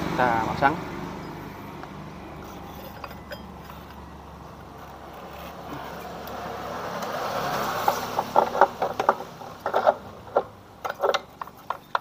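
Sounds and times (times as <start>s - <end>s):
metallic clicks and clinks: 2.4s - 4.1s.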